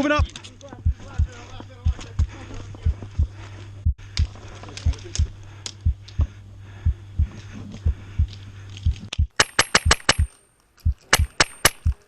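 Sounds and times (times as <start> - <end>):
footsteps: 0.0 - 9.4
airsoft rifle firing sharp cracks: 9.4 - 10.3, 11.1 - 12.0.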